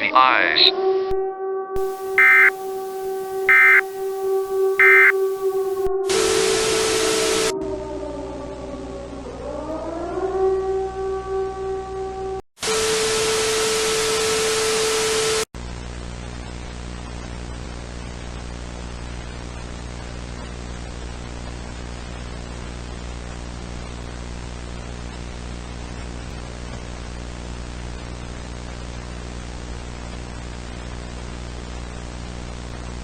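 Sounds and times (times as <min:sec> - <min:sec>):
static hiss: 0:01.8 - 0:07.5, 0:12.6 - 0:15.4.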